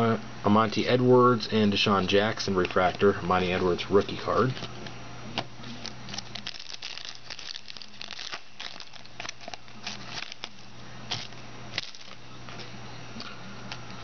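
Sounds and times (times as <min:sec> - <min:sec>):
low electrical hum: 0:00.0 - 0:14.0
trading cards rustling and clicking: 0:05.6 - 0:12.6.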